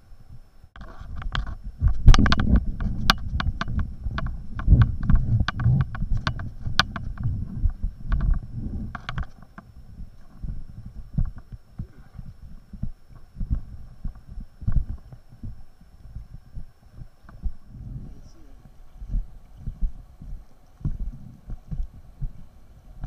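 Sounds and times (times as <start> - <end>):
muffled low thumps: 0.2 - 23.0
sharp clicks and knocks: 0.8 - 9.7.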